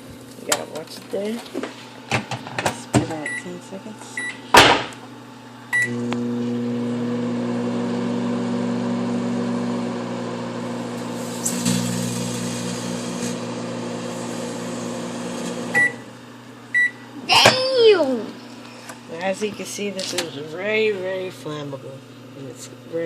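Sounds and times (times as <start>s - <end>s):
microwave hum: 0.0s - 23.0s
microwave beep: 3.2s - 3.5s, 4.2s - 4.4s, 5.7s - 6.3s, 15.7s - 16.1s, 16.7s - 17.0s.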